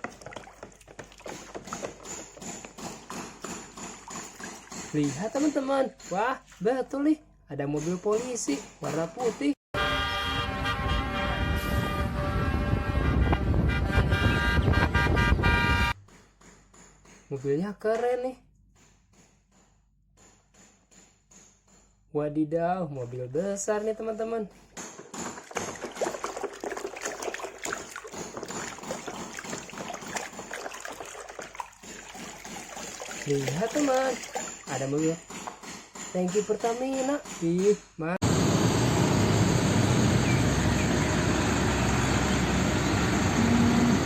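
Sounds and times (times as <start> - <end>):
water sloshing and splashing: 0.0 - 6.8, 24.9 - 35.7
loud horn blast: 9.8 - 16.0, 41.6 - 44.0.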